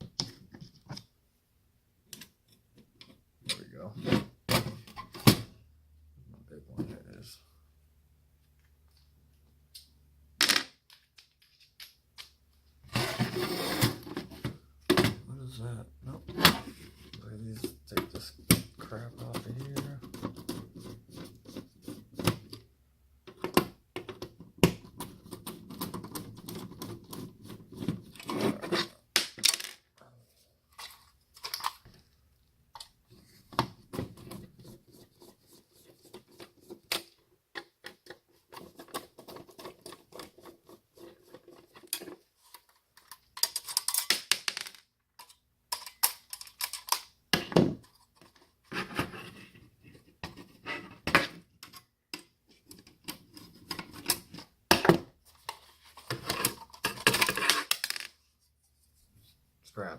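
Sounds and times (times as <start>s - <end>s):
parts scraping: 9.8s - 14.6s, 25.1s - 47.2s
plastic and metal parts clicking: 45.1s - 47.2s.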